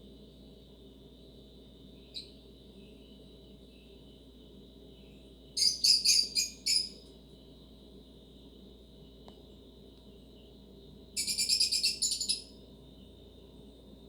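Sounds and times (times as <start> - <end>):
small bird chirping: 2.0 - 4.1, 4.9 - 7.1, 11.2 - 13.2.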